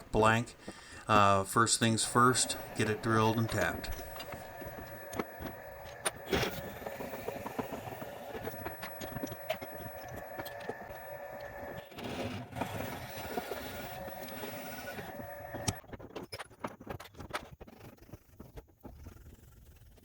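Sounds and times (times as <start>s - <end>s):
workshop machine whining: 0.0s - 15.8s.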